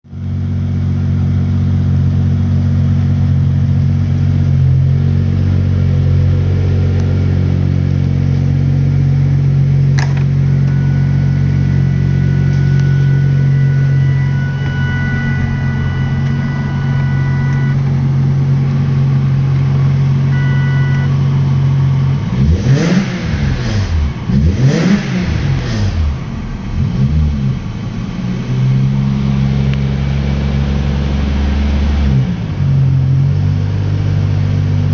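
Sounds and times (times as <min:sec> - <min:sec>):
car engine idling: 0:00.1 - 0:34.9
engine revving: 0:04.8 - 0:34.9.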